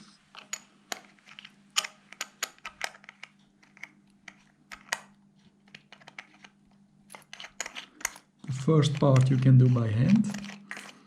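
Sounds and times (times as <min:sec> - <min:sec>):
small metal parts clicking: 0:00.3 - 0:03.9.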